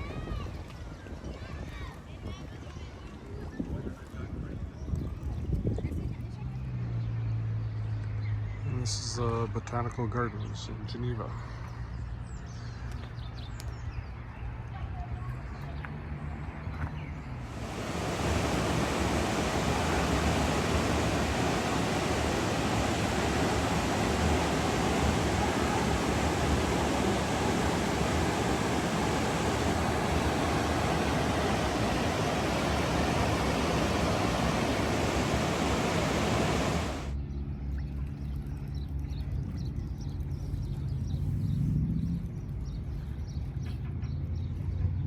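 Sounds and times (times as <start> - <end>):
rushing water: 17.4 - 37.1.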